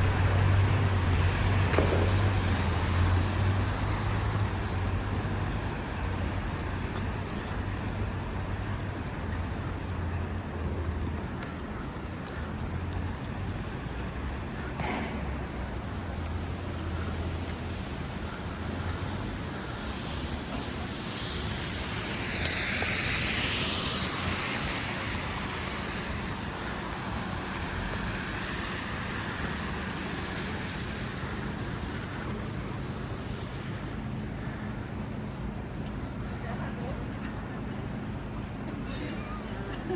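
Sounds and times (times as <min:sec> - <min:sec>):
engines humming: 0:00.0 - 0:39.9
tyre hiss on slushy road: 0:17.3 - 0:33.8, 0:38.8 - 0:39.9.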